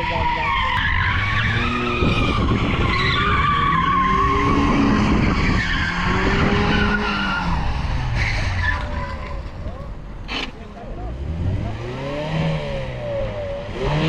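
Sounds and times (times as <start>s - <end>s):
tyres squealing: 0.0s - 9.5s
car engine revving: 0.0s - 9.6s, 10.2s - 14.0s.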